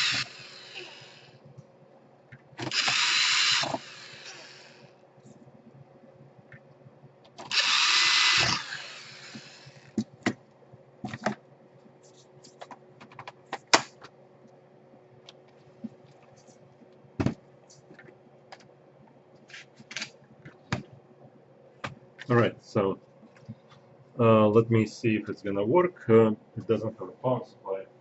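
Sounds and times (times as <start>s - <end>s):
electric screwdriver running: 0.0s - 1.3s, 2.6s - 4.9s, 7.4s - 10.0s
plastic parts clicking and knocking: 12.5s - 14.1s.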